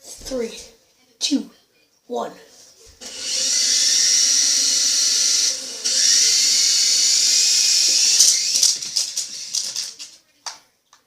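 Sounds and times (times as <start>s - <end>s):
toy quadcopter motors whining: 3.0s - 10.2s.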